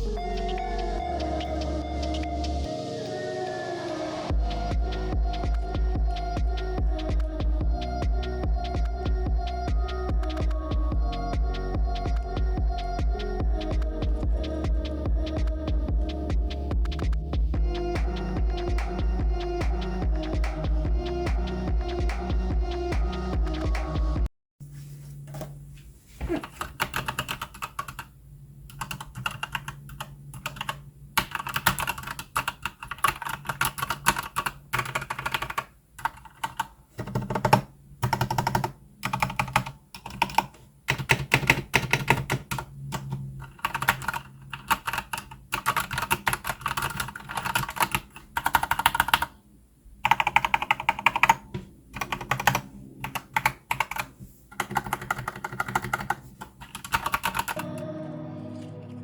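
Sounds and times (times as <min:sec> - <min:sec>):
mechanical keyboard typing: 0:26.4 - 0:28.1, 0:28.7 - 0:49.4, 0:50.0 - 0:57.7.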